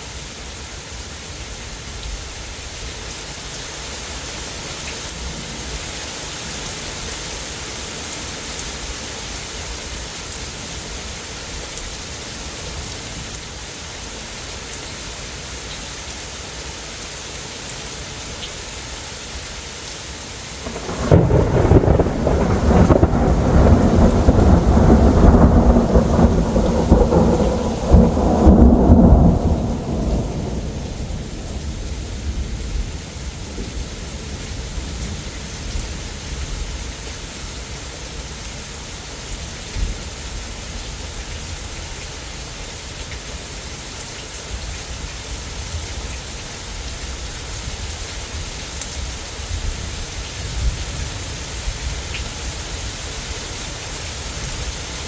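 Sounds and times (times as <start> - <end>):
heavy rain hissing: 0.0 - 55.0
thunder rumble: 20.6 - 35.1.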